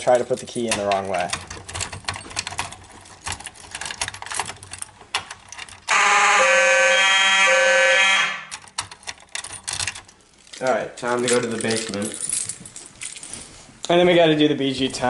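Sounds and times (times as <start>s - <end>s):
light clicking and rattling: 0.0s - 5.8s, 8.6s - 14.0s
fire alarm blast: 5.9s - 8.5s.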